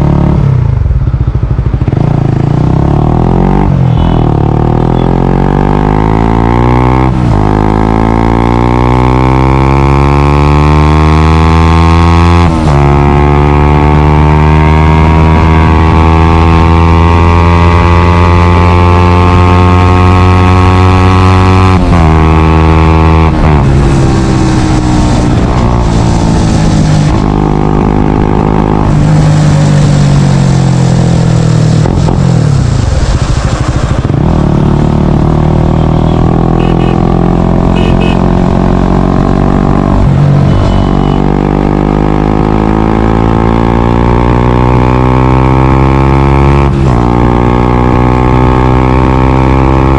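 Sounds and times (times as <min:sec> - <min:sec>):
motorcycle exhaust revving: 0:00.0 - 0:49.9.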